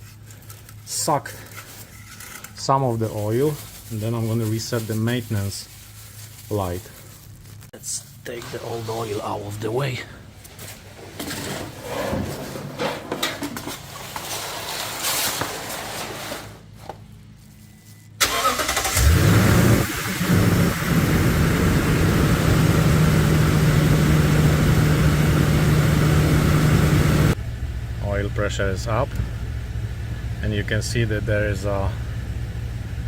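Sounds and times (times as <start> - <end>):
clattering handling noises: 0.0 - 2.7, 10.3 - 17.9
truck engine starting and idling: 18.2 - 33.0.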